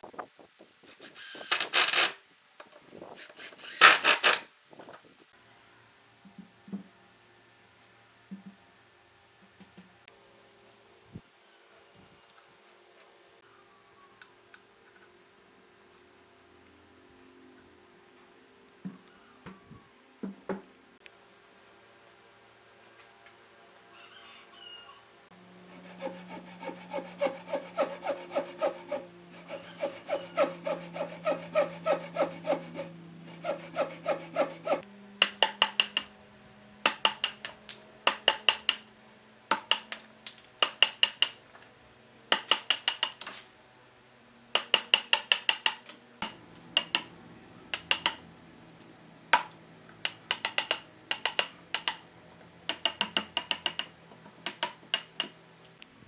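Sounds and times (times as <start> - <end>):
hand tool strokes on wood: 25.6 - 34.8.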